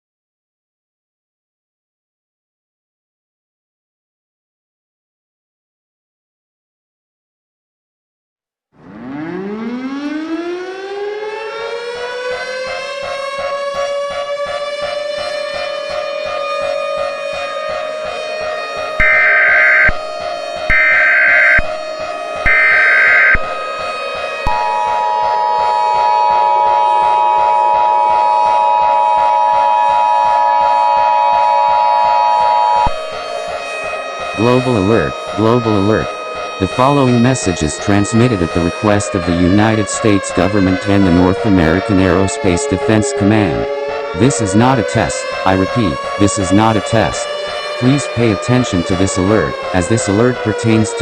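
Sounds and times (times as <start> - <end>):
low pulsing drone: 8.8 - 51.0
warning siren wailing: 8.8 - 51.0
two-tone alert signal: 19.0 - 20.0, 20.7 - 21.7, 22.4 - 23.5.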